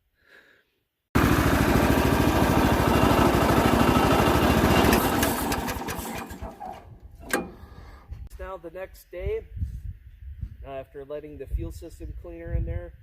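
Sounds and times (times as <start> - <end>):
small engine running: 1.2 - 6.9.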